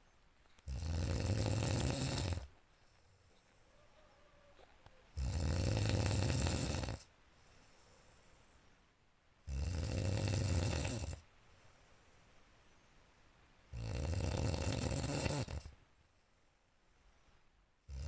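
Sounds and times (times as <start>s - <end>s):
quiet breathing: 0.0s - 18.0s
person snoring loudly: 0.7s - 2.5s, 5.1s - 7.1s, 9.5s - 11.2s, 13.7s - 15.7s.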